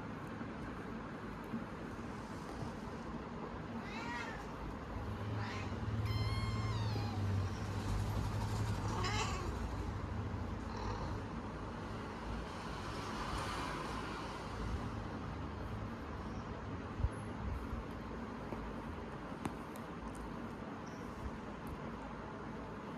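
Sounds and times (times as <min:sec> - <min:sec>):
kittens meowing: 0:03.8 - 0:07.6, 0:08.8 - 0:09.9.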